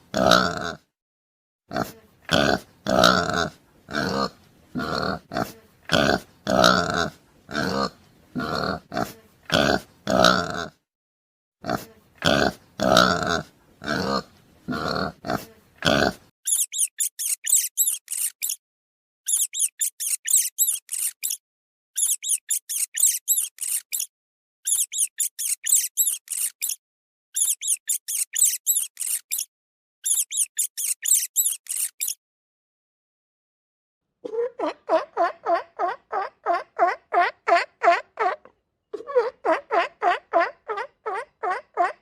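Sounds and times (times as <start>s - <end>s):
animal grunting: 0.1s - 0.9s, 1.7s - 10.8s, 11.6s - 16.3s
high-pitched squeaking chirps: 16.4s - 18.6s, 19.3s - 21.4s, 22.0s - 26.8s, 27.4s - 32.2s.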